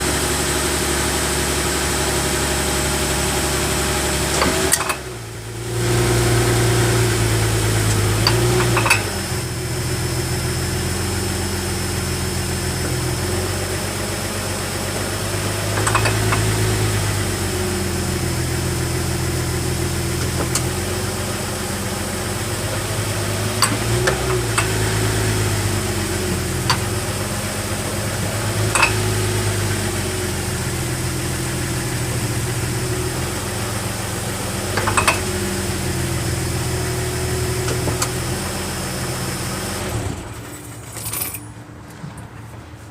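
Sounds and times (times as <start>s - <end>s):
car engine idling: 0.0s - 42.9s
sharp drivetrain clunks: 3.1s - 9.6s, 14.7s - 41.2s.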